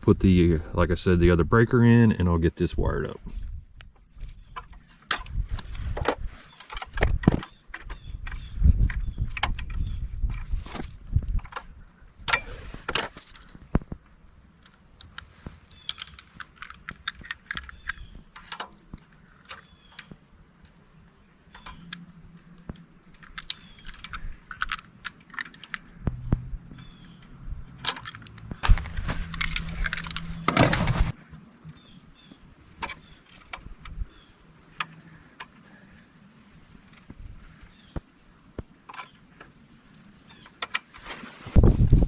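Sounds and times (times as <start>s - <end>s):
hand tools and screws clinking: 27.8s - 31.1s
scraping rush: 28.6s - 31.2s.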